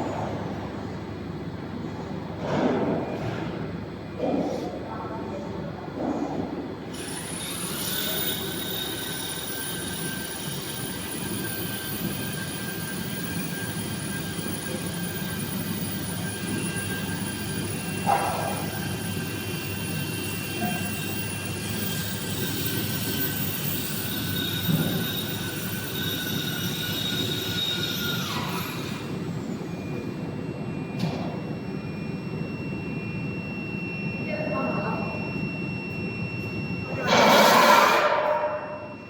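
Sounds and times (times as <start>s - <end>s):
machine running with high whine: 6.0s - 39.0s
brief loud machine sound: 6.9s - 15.2s, 16.3s - 30.0s, 36.3s - 39.0s.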